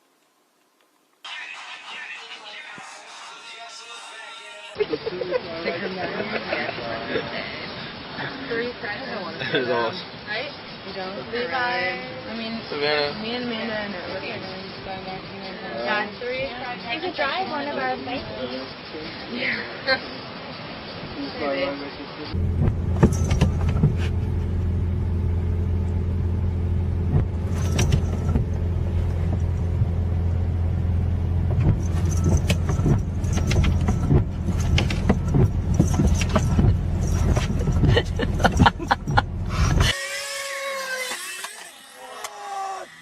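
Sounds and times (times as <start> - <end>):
low motor hum: 22.4 - 41.1
clicks and rattles: 31.5 - 39.9.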